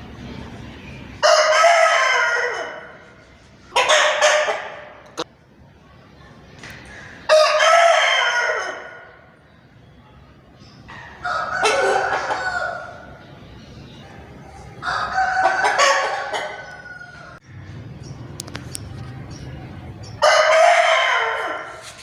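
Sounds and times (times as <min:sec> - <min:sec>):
chicken calling: 0:10.9 - 0:13.3.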